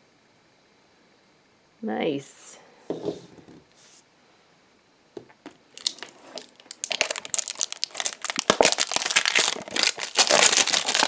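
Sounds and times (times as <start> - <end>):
toy packaging crinkling: 5.7 - 11.0.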